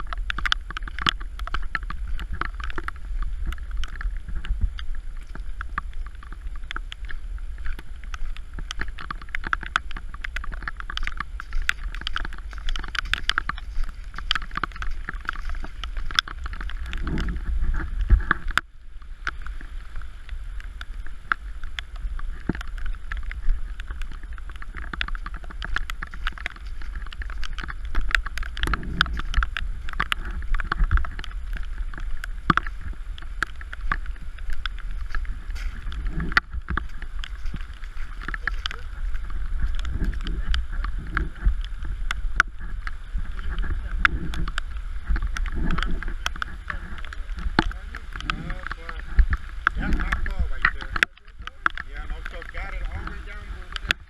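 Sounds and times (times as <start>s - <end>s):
heavy rain pouring: 0.0s - 54.0s
wind buffeting the microphone: 0.0s - 54.0s.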